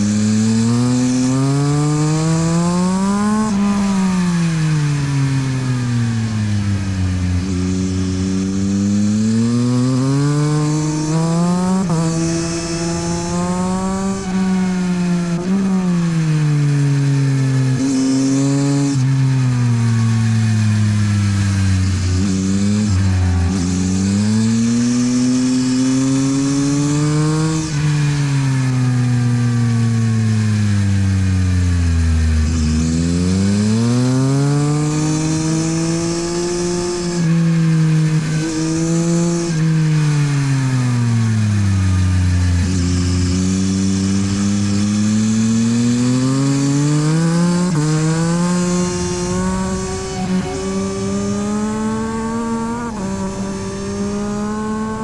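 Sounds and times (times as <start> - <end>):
motorcycle engine revving: 0.0 - 55.0.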